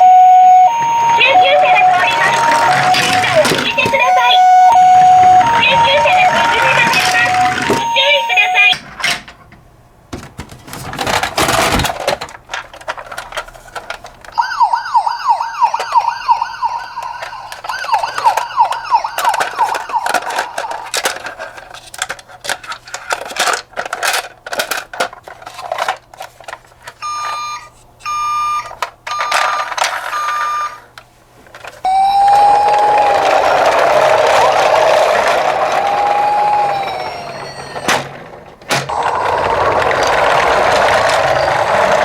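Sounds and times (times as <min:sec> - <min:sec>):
electronic tone switching on and off: 0:00.0 - 0:06.6
toy electronic siren: 0:00.0 - 0:08.8, 0:14.3 - 0:21.1, 0:27.0 - 0:30.8, 0:31.8 - 0:38.1, 0:38.9 - 0:42.0.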